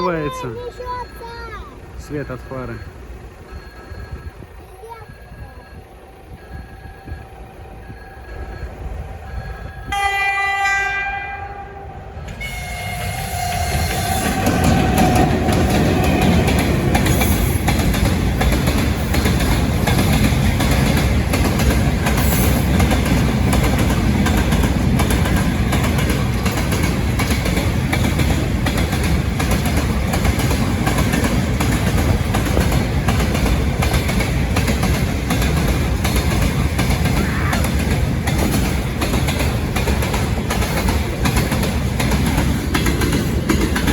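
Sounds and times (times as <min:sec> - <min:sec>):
train rumble and wheel clatter: 0:00.0 - 0:43.9
locomotive horn blasts: 0:09.9 - 0:15.4.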